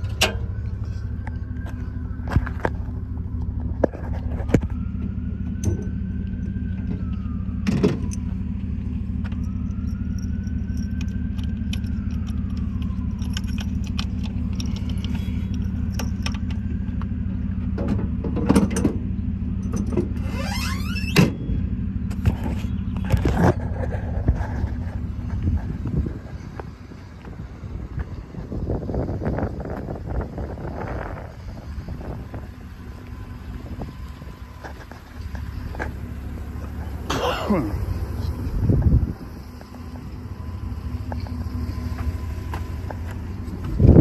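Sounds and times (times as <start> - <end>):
truck engine idling: 0.0 - 44.0
handling clicks and knocks: 9.2 - 19.0
faint whine: 19.0 - 44.0.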